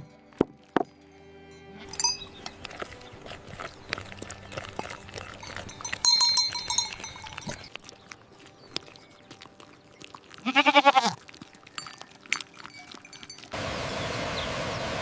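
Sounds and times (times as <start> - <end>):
livestock bleating: 10.4 - 11.2.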